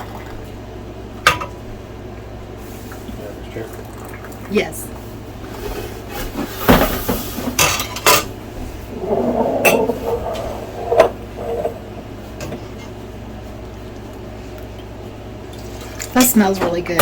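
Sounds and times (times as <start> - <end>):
metal cookware rubbing: 8.2 - 12.2.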